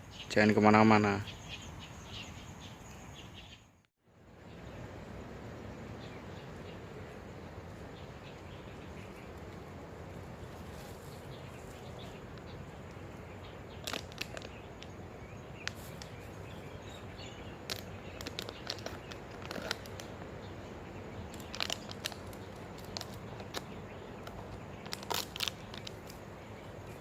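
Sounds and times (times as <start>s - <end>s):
outdoor background noise: 0.0s - 27.0s
crackles and crunches: 13.7s - 15.0s, 15.6s - 17.0s, 17.6s - 20.3s, 21.2s - 27.0s.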